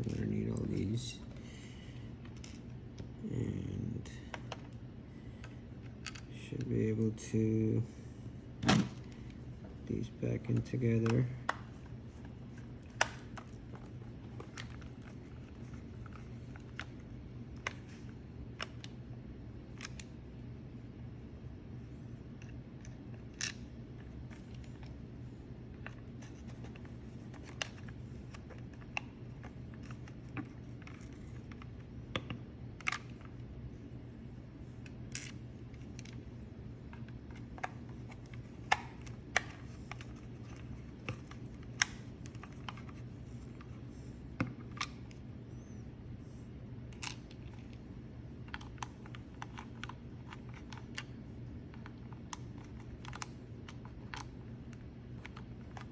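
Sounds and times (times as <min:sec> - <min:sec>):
steady low hum: 0:00.0 - 0:55.9.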